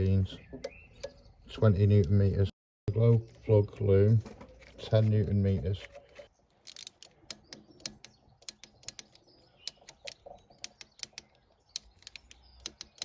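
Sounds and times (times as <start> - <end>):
hand tools clicking and tapping: 6.7 - 13.0.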